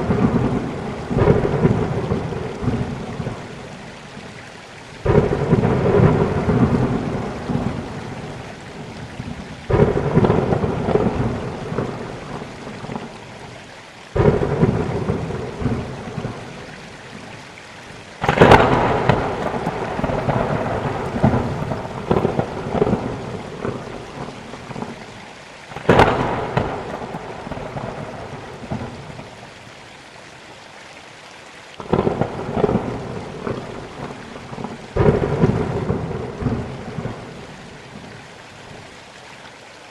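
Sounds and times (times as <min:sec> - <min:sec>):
thunder claps rumbling: 0:00.0 - 0:03.8, 0:05.0 - 0:13.2, 0:14.2 - 0:16.7, 0:18.2 - 0:25.1, 0:25.7 - 0:29.4, 0:31.8 - 0:38.1
steady rain: 0:00.0 - 0:39.9.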